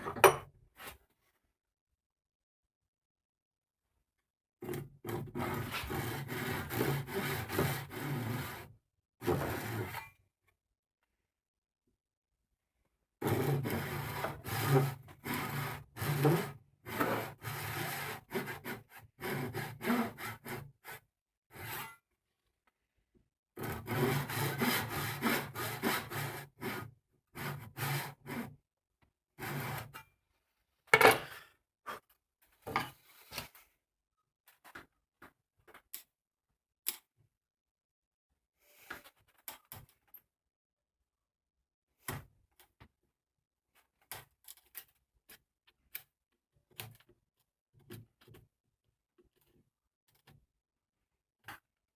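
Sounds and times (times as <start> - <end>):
hand sawing wood: 4.7 - 10.0, 13.2 - 21.8, 23.6 - 28.6, 29.4 - 30.0.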